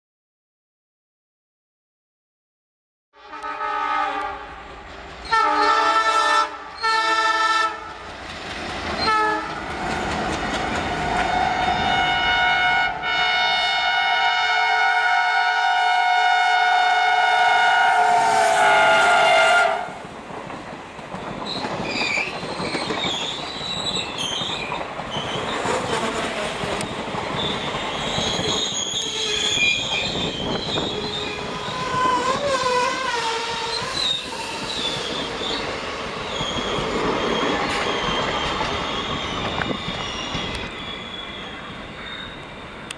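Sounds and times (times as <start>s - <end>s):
locomotive air horn blasts: 3.2s - 4.6s, 5.3s - 7.9s, 9.0s - 9.5s, 11.3s - 20.0s
train wheels clattering over rails: 7.9s - 11.6s, 20.0s - 40.8s
train brakes squealing: 21.2s - 42.9s.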